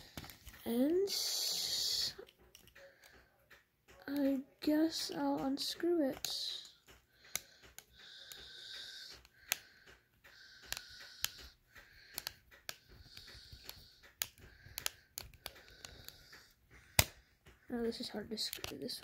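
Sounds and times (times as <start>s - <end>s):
soft hissing: 1.0s - 2.2s
small screwdriver clicks and taps: 2.1s - 19.0s.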